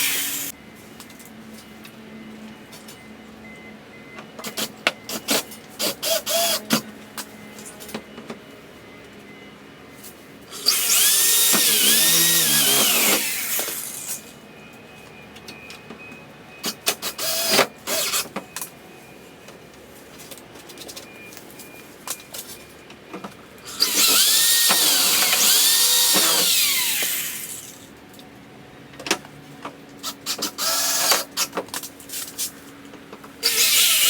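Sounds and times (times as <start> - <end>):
power drill running: 0.0 - 0.5, 5.8 - 6.7, 10.5 - 14.2, 17.1 - 18.2, 23.7 - 27.8, 30.0 - 31.3, 33.4 - 34.0.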